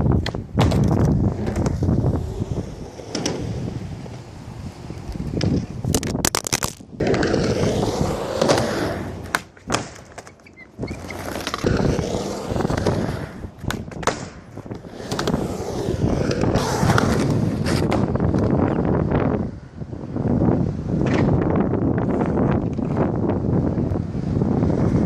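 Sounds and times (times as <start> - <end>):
skateboard trick clacks and thuds: 0.0 - 4.3, 4.9 - 18.6
skateboard rolling on pavement: 0.0 - 25.0.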